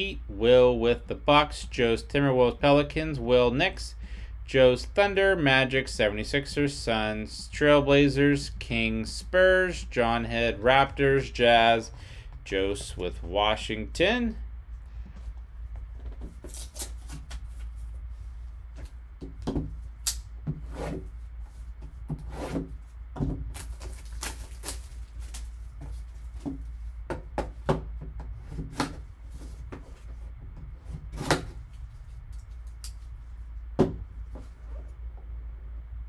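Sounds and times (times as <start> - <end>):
steady low hum: 0.0 - 36.0
cardboard and plastic crinkling: 23.5 - 26.7.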